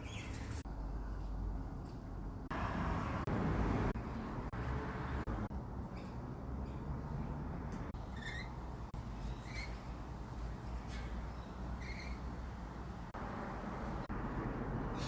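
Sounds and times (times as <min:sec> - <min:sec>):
bird chirps: 0:00.0 - 0:00.6, 0:08.0 - 0:10.0, 0:10.6 - 0:12.4.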